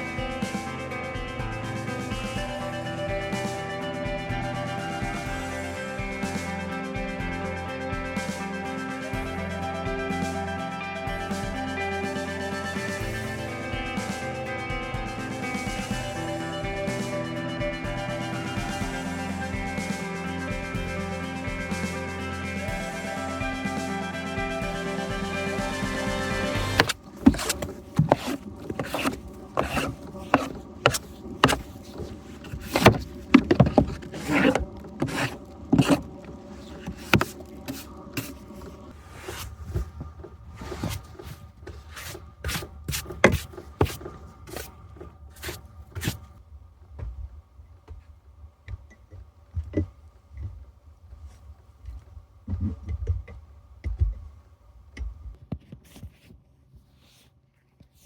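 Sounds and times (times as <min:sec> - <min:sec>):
knocks and scrapes of objects handled: 0:26.7 - 0:46.4, 0:55.0 - 0:58.0.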